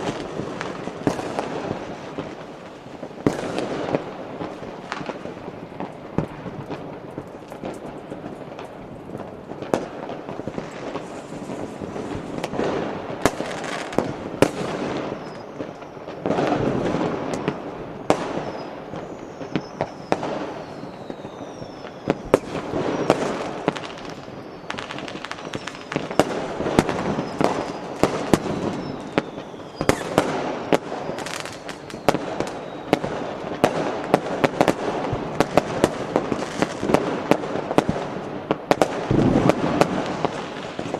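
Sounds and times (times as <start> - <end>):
firecrackers crackling: 0.0 - 40.9
firework bangs: 0.0 - 40.9
falling firework whistles: 9.7 - 38.0.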